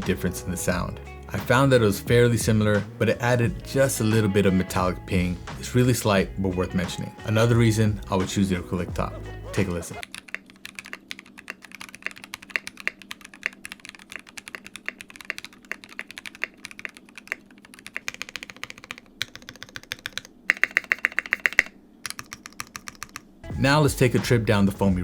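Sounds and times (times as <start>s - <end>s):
mechanical keyboard typing: 10.0s - 23.3s.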